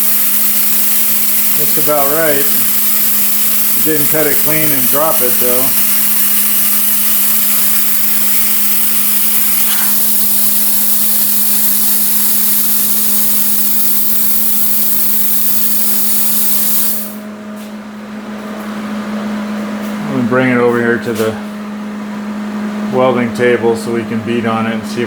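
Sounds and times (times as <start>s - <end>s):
air hissing through torch: 0.0s - 17.2s
machine humming: 0.0s - 17.4s.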